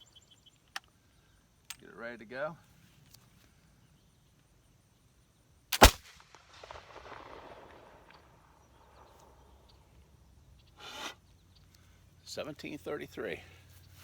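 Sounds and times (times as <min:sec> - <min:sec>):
pistol gunshot: 0:05.8 - 0:09.1.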